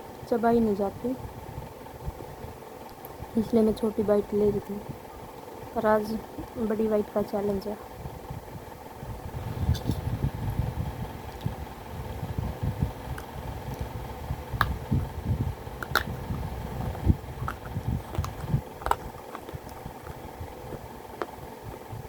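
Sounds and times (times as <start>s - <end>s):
close chewing with crunches: 15.8s - 22.0s.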